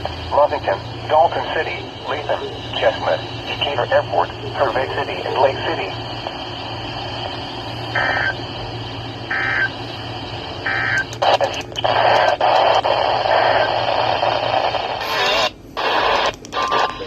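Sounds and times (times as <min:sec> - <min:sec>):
radio static with crackles: 0:00.0 - 0:17.0
steady low hum: 0:00.0 - 0:17.0
digital data tone bursts: 0:07.9 - 0:08.6, 0:09.2 - 0:09.8, 0:10.6 - 0:12.4.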